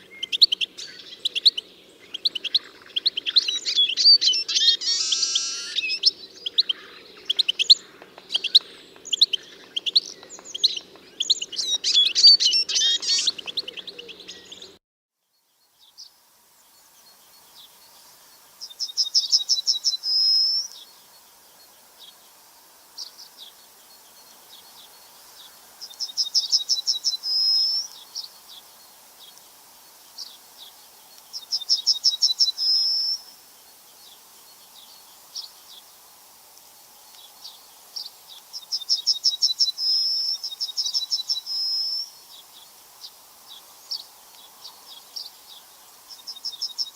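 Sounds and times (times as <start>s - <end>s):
bird trilling song: 0.0s - 14.8s, 18.6s - 20.9s, 31.3s - 33.4s, 37.2s - 42.6s
songbirds chirping: 0.0s - 46.9s.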